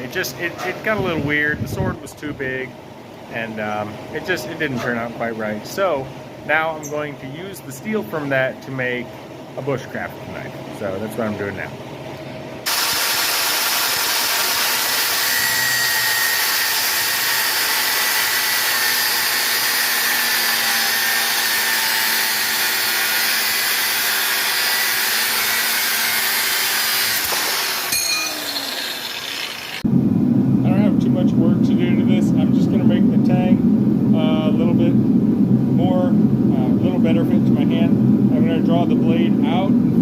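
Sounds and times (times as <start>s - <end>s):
power tool running on knife steel: 12.7s - 29.8s.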